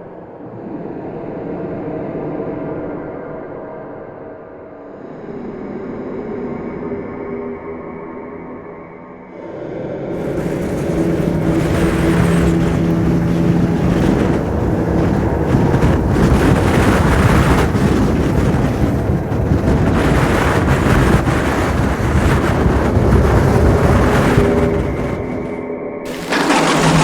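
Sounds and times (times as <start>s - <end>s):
rushing noise with deep rumble: 10.2s - 27.0s.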